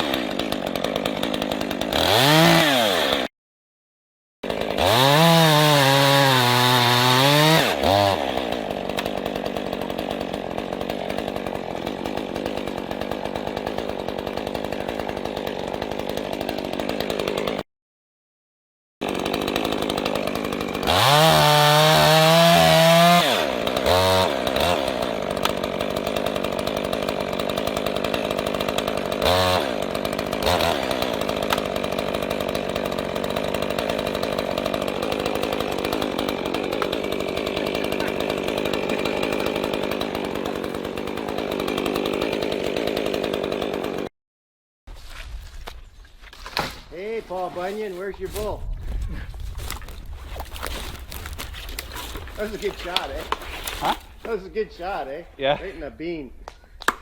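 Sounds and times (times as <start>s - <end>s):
chainsaw idling and revving: 0.0s - 3.3s, 4.4s - 17.6s, 19.0s - 44.2s, 47.0s - 56.2s.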